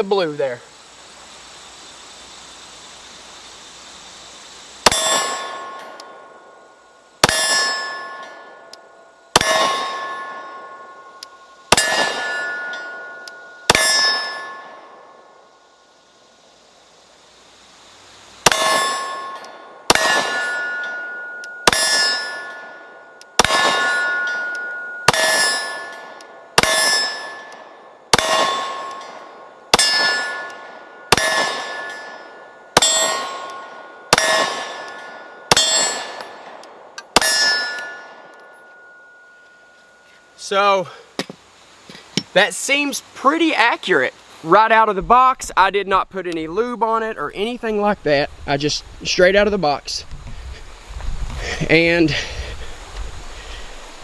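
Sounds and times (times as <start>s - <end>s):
steel target clanging: 4.9s - 6.6s, 7.2s - 8.7s, 9.4s - 15.1s, 18.4s - 40.2s
pistol shots: 9.4s - 10.2s, 19.9s - 20.5s, 23.4s - 24.1s, 28.1s - 28.9s, 31.1s - 31.9s.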